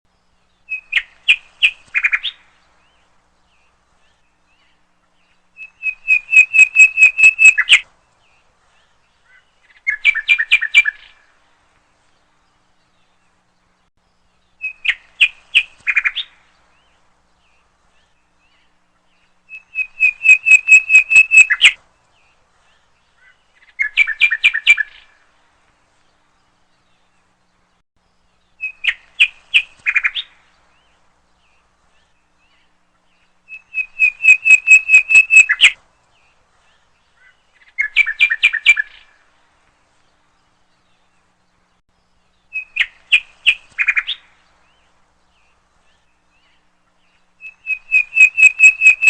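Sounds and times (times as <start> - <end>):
bird trilling chirps: 5.6 - 7.8, 19.5 - 21.8, 33.5 - 35.8, 37.2 - 39.1, 47.4 - 49.0.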